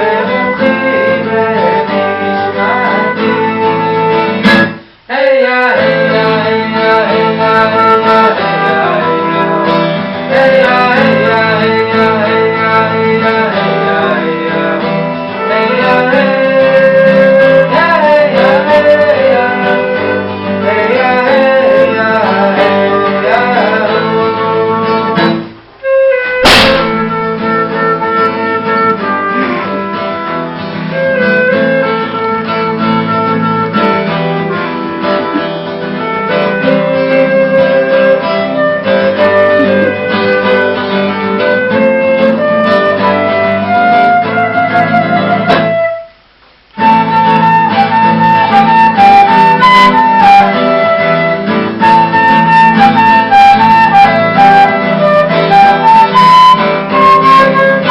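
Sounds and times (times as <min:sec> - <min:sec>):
acoustic guitar and violin music: 0:00.0 - 0:57.9
door slamming: 0:26.4 - 0:27.2.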